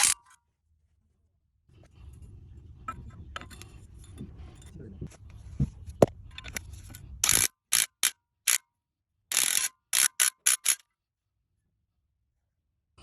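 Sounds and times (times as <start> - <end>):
hand ratchet clicking: 7.2 - 8.6, 9.3 - 10.8.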